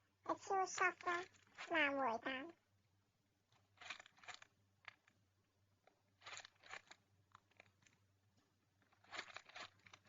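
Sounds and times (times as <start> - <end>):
plastic packaging crinkling: 0.8 - 2.2, 3.6 - 5.2, 6.2 - 8.0, 8.8 - 10.0.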